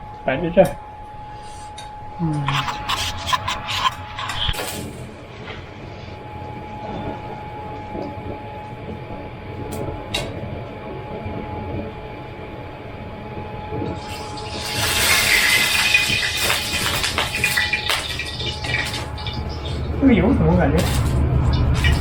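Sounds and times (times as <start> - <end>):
faint steady whine: 0.0 - 22.0
oil sizzling in a pan: 13.9 - 20.0.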